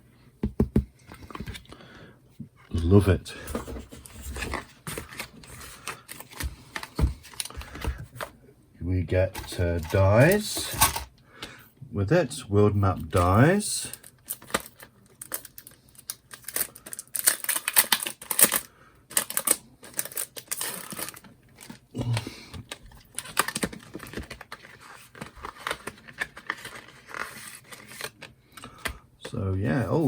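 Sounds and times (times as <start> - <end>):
packaging crinkling: 13.9 - 28.9.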